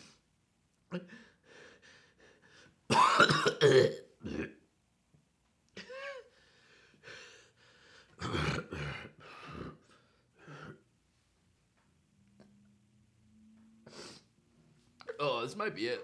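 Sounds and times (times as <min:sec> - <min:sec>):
faint low hum: 0:00.0 - 0:16.0
man breathing hard: 0:01.1 - 0:02.8, 0:06.0 - 0:08.2
man grunting and clearing throat: 0:02.9 - 0:04.6, 0:08.2 - 0:09.2.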